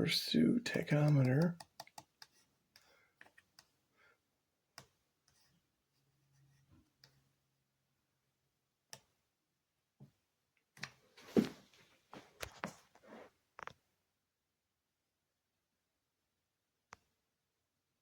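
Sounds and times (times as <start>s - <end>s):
faint clicks and taps: 0.7s - 3.8s.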